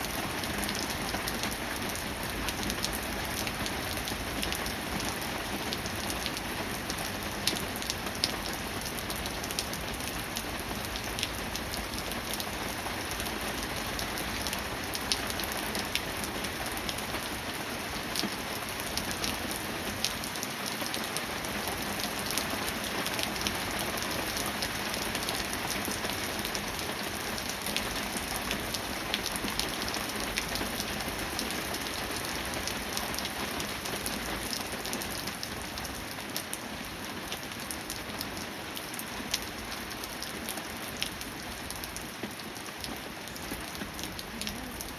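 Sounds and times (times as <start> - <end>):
raindrops pattering on a surface: 0.0 - 44.9
steady rain: 0.0 - 44.9.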